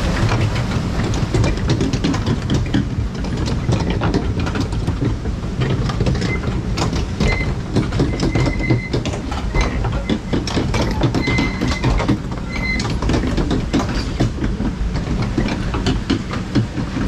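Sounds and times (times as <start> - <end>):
low rumble: 0.0 - 4.6
rapid clicking and clattering: 0.0 - 17.0
thin squeaks: 7.2 - 12.9.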